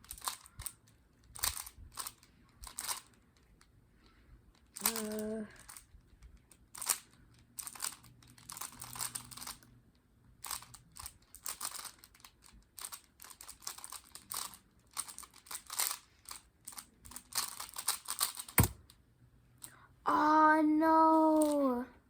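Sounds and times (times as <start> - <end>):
rapid plastic clicking of cube: 0.0 - 19.0.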